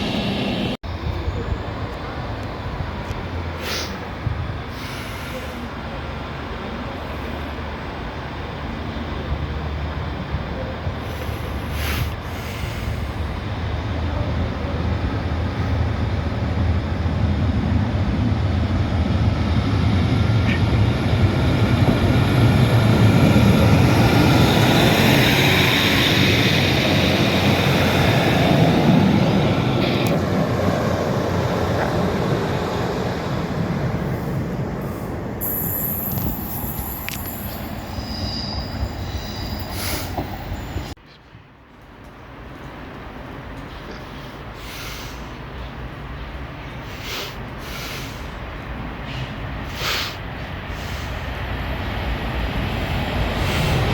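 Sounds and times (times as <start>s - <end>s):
train rumble: 0.0s - 53.9s
train running along the line: 0.0s - 53.9s
thin high whine: 34.9s - 40.2s.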